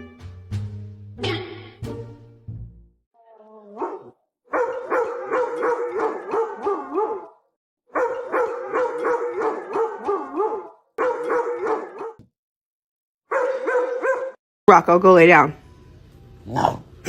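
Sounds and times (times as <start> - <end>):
dog howling: 3.2 - 12.2
dog barking: 3.7 - 12.2, 13.3 - 14.4.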